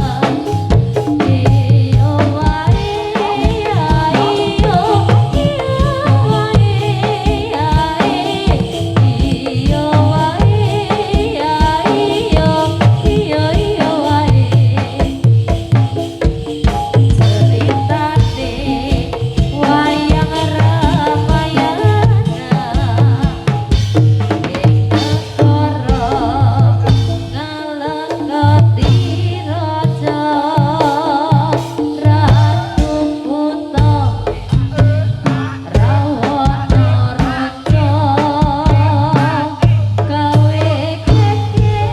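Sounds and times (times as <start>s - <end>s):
wavering melodic lines: 0.0s - 23.9s
ensemble drumming: 0.0s - 41.9s.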